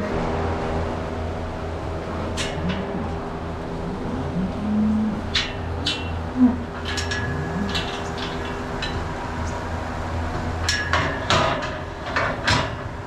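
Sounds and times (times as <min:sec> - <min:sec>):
steady low hum: 0:00.0 - 0:13.0
steel gates clanking and rattling: 0:02.3 - 0:03.2, 0:05.2 - 0:09.8, 0:10.4 - 0:13.0.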